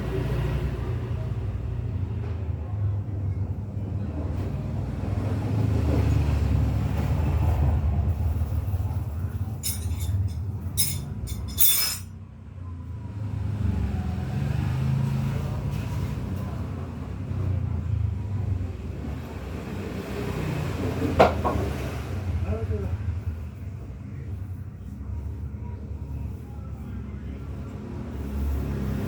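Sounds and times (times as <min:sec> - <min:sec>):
motor vehicle rumble: 0:00.0 - 0:29.0
sharp metal clinks: 0:09.6 - 0:12.1.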